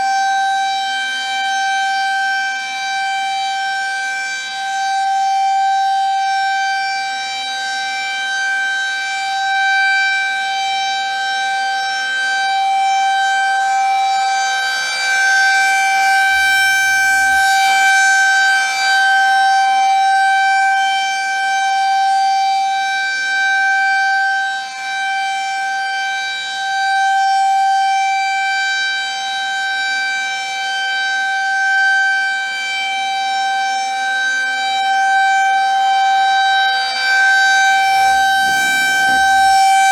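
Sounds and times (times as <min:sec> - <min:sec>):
rotating tornado siren: 0:08.5 - 0:39.9.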